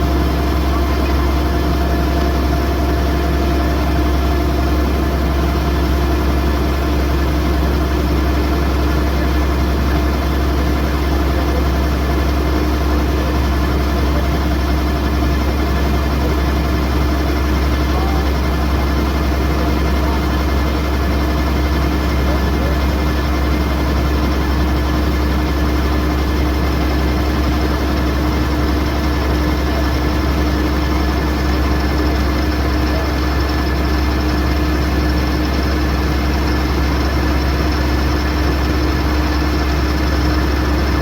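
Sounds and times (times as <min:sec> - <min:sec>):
combine harvester engine running: 0:00.0 - 0:41.0.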